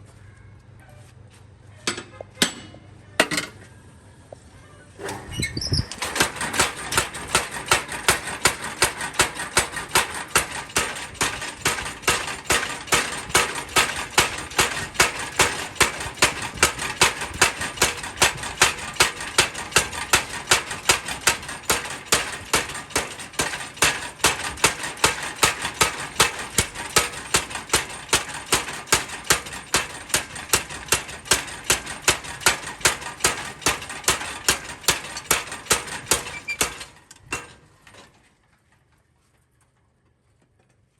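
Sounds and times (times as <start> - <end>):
power hammer striking metal: 5.9 - 37.5.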